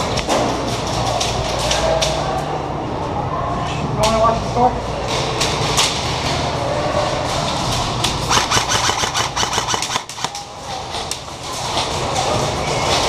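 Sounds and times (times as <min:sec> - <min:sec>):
airsoft guns firing: 0:08.2 - 0:10.5.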